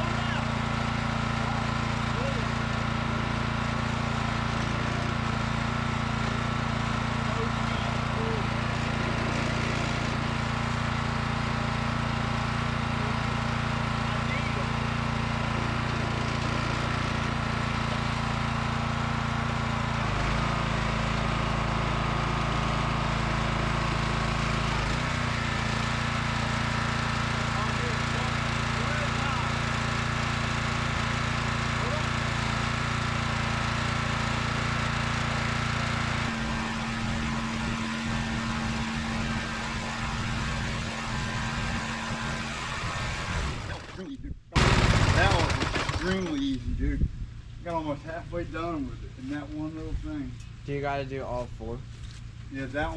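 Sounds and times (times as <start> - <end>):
pressure washer engine running: 0.0 - 46.4
water spraying on concrete: 36.2 - 43.6.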